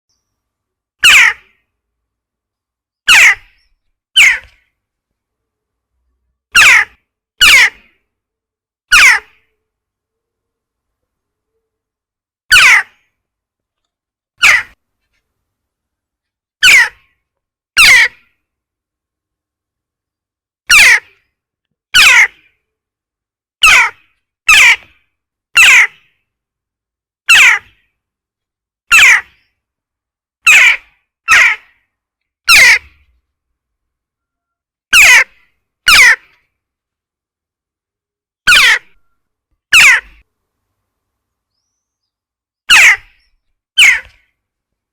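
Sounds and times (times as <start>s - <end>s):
jackdaw harsh calls: 1.0s - 1.7s, 3.1s - 4.6s, 6.5s - 8.0s, 8.9s - 9.5s, 12.5s - 13.1s, 14.4s - 14.8s, 16.6s - 17.1s, 17.8s - 18.4s, 20.7s - 21.3s, 22.0s - 22.6s, 23.6s - 25.0s, 25.6s - 26.2s, 27.3s - 28.0s, 28.9s - 29.5s, 30.4s - 33.2s, 34.9s - 36.5s, 38.5s - 39.1s, 39.7s - 40.2s, 42.7s - 44.4s
jackdaw calls sliding down: 42.7s - 43.1s, 43.8s - 44.1s.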